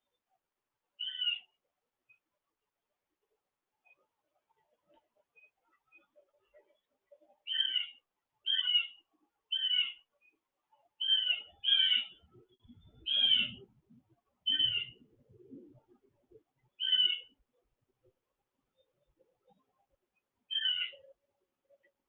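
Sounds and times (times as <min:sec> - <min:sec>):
bird calling: 0:01.0 - 0:01.5, 0:07.4 - 0:10.1, 0:11.0 - 0:13.8, 0:14.4 - 0:15.8, 0:16.7 - 0:17.4, 0:20.5 - 0:21.2.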